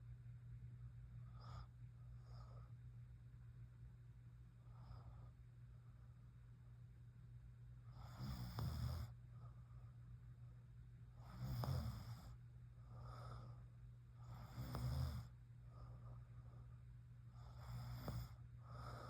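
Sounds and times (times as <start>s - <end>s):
soft breath: 1.1s - 3.0s, 4.5s - 6.9s, 9.0s - 19.0s
woman snoring: 8.0s - 9.1s, 11.3s - 12.4s, 14.3s - 15.3s, 17.5s - 19.0s.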